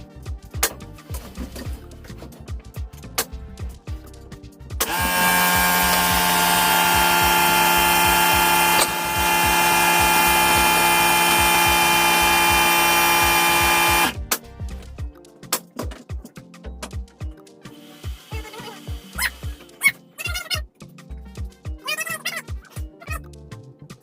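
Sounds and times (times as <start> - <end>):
background music: 0.0 - 24.0
power tool motor running: 4.8 - 14.2, 17.8 - 19.6.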